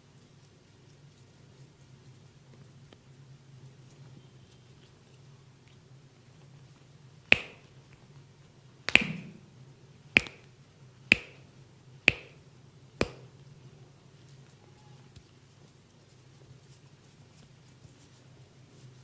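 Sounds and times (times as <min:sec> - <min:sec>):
hands snapping: 0:07.3 - 0:07.7, 0:08.9 - 0:09.4, 0:10.2 - 0:10.5, 0:11.1 - 0:11.4, 0:12.1 - 0:12.4, 0:13.0 - 0:13.3.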